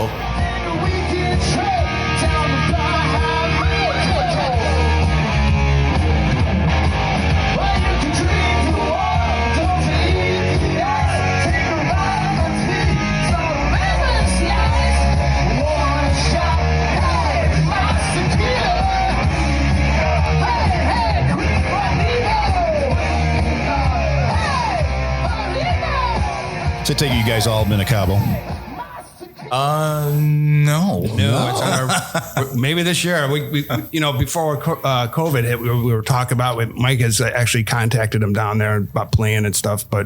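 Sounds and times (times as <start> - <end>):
electric guitar: 0.0 - 26.9
person singing: 31.0 - 32.6.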